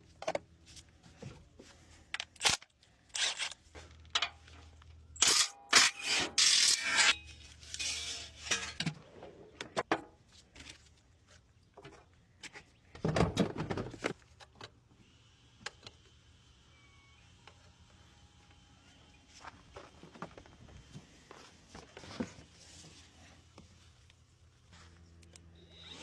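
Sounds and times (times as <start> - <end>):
tools clattering and knocking: 7.7 - 9.0.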